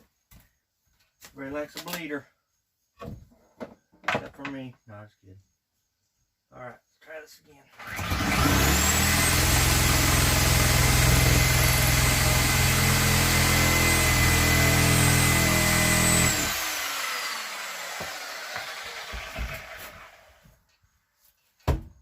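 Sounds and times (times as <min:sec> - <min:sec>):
circular saw cutting wood: 0:07.8 - 0:20.5
saw blade coasting down: 0:10.2 - 0:20.4.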